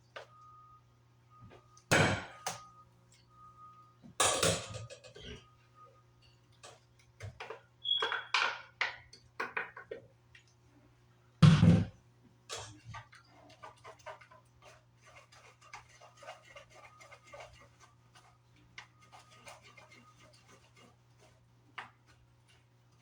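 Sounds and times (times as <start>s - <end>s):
dishes and utensils clattering: 4.2s - 5.4s, 12.5s - 14.5s.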